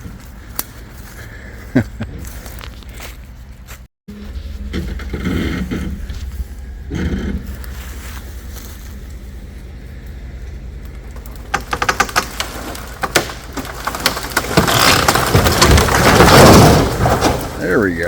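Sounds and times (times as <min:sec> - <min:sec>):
low engine hum: 0:00.0 - 0:16.2
wooden barn collapsing: 0:04.4 - 0:08.0, 0:10.7 - 0:18.0
timbers cracking and snapping: 0:10.8 - 0:18.0.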